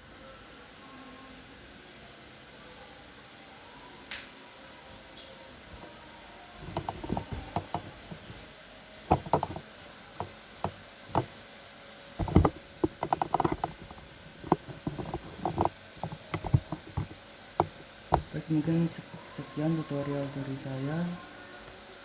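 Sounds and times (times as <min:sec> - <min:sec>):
hands tapping on laptop: 0:06.7 - 0:08.2, 0:09.1 - 0:09.6, 0:10.2 - 0:11.3, 0:12.2 - 0:18.4.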